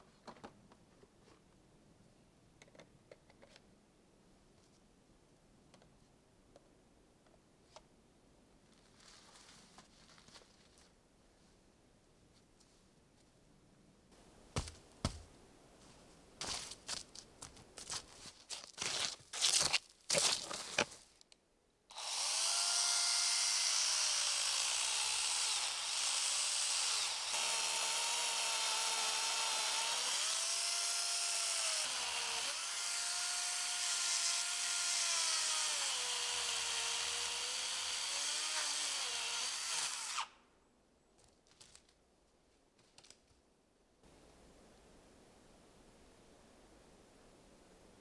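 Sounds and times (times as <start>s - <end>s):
power drill drilling into wood: 21.9s - 40.3s.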